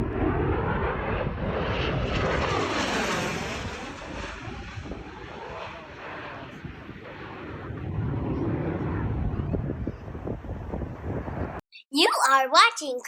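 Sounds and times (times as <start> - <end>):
airplane flying overhead: 0.0 - 11.6.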